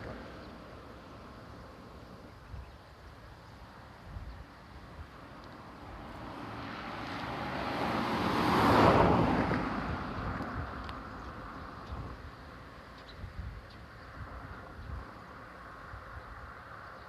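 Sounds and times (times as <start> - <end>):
vehicle approaching: 5.8 - 11.9
wind buffeting microphone: 13.1 - 15.2.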